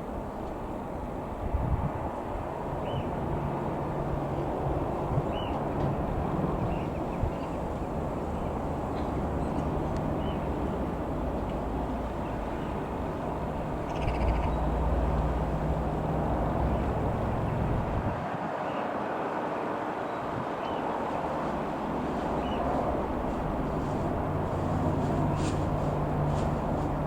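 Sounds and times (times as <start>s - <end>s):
helicopter drone: 0.0s - 27.0s
birds chirping: 4.2s - 18.0s, 20.6s - 27.0s.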